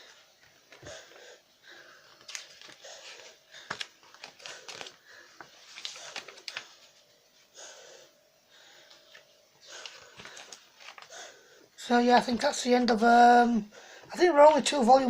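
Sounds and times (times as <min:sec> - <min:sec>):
books rustling and knocking: 0:02.2 - 0:06.7.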